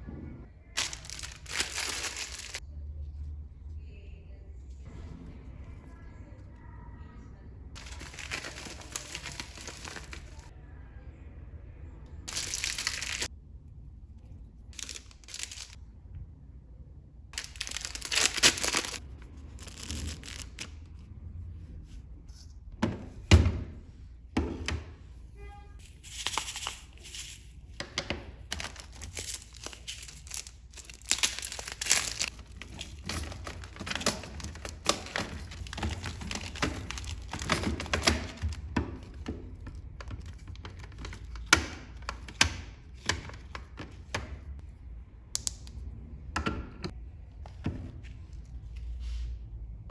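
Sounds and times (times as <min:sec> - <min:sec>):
packaging crinkling and tearing: 0:00.8 - 0:02.6, 0:07.8 - 0:10.5, 0:12.3 - 0:13.3, 0:14.8 - 0:15.8, 0:17.4 - 0:20.8, 0:28.5 - 0:38.6.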